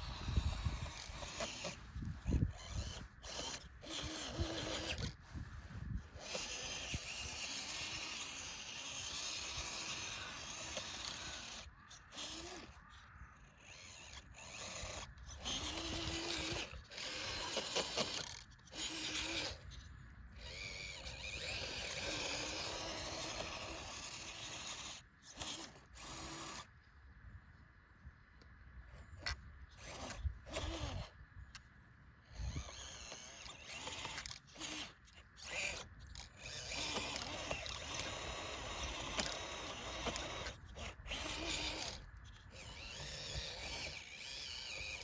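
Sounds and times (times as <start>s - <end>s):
motor whining: 0.0s - 26.8s, 28.9s - 45.0s.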